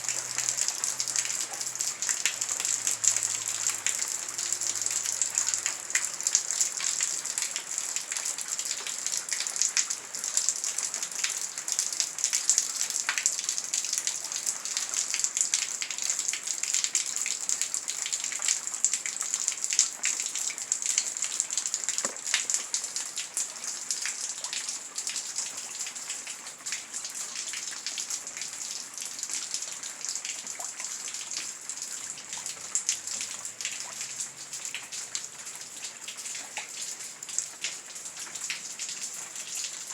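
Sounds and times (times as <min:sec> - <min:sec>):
heavy rain falling: 0:00.0 - 0:23.2.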